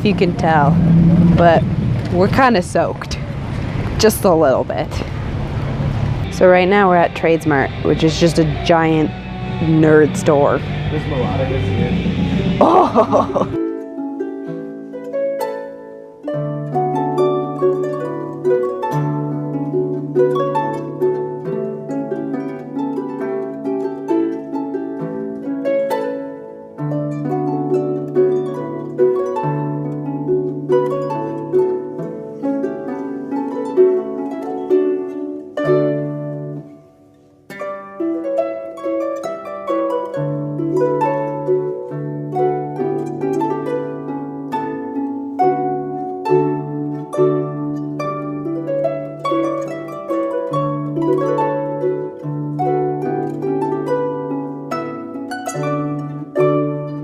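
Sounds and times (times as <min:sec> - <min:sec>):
held low notes: 0:00.0 - 0:13.6
plucked harp-like melody: 0:00.0 - 0:57.0.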